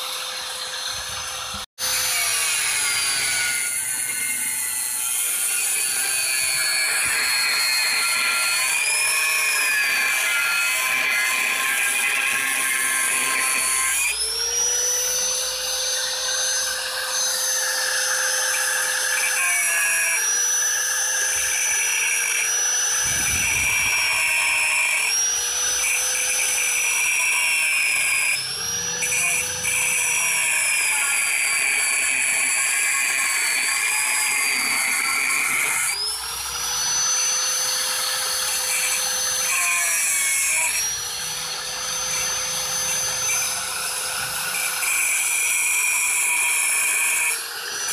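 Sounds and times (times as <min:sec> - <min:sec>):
electric power tool whine: 0:00.0 - 0:47.9.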